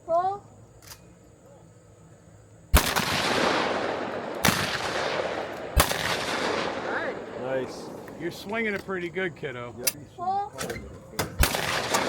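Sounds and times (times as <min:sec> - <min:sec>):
shotgun shots echoing: 0:02.8 - 0:08.8, 0:11.2 - 0:12.0.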